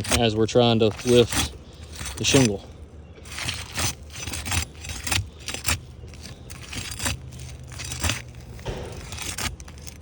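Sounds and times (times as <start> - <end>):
bar scraping brittle shingles: 0.0 - 10.0.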